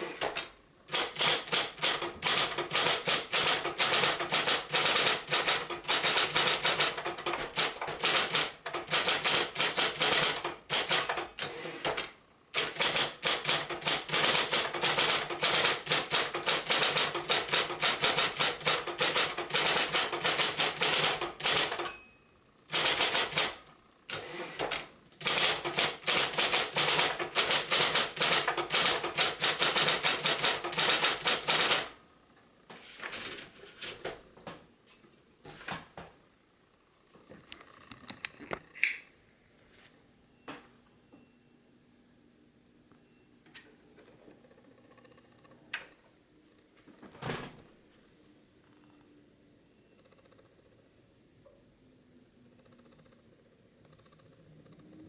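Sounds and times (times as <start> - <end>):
electric typewriter keystrokes: 0.0 - 22.0, 22.7 - 32.0.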